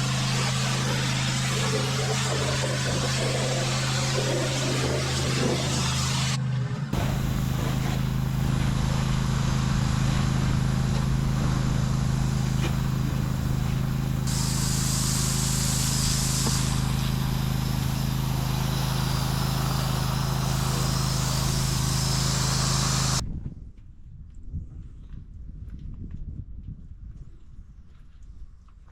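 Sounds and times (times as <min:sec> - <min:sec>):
pressure washer engine humming: 0:00.0 - 0:06.4, 0:07.0 - 0:23.2
water spray hissing: 0:00.0 - 0:06.4, 0:07.0 - 0:23.2.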